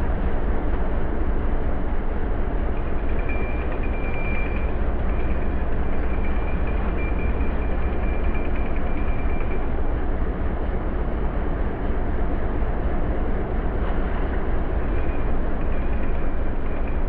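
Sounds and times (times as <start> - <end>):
boat engine running: 0.1 - 17.0.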